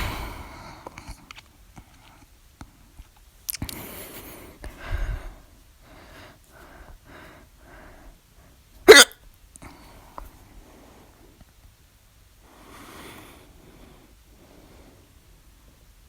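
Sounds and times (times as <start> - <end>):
woman breathing quietly: 0.0 - 1.3, 3.7 - 8.7, 9.6 - 11.5, 12.4 - 15.8
woman hiccuping: 8.9 - 9.2.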